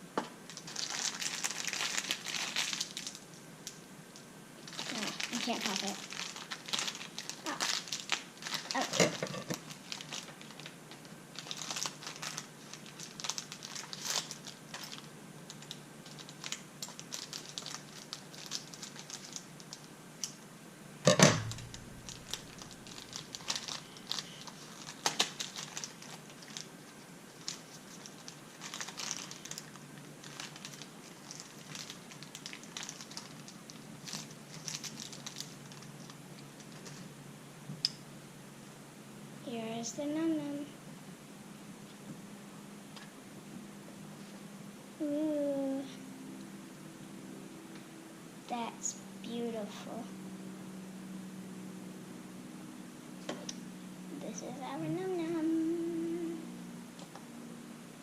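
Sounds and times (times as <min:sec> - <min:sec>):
packaging crinkling and rustling: 0:00.5 - 0:03.8, 0:04.6 - 0:19.9, 0:21.3 - 0:37.1
loud sharp knock: 0:21.1 - 0:21.7.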